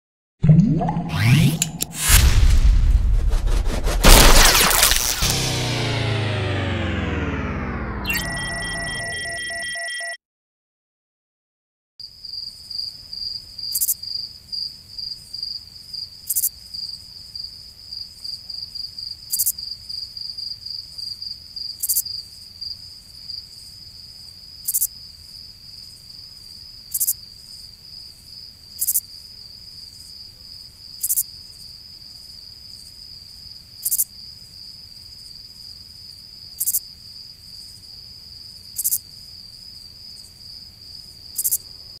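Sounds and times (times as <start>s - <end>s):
cricket chirps: 12.0s - 42.0s.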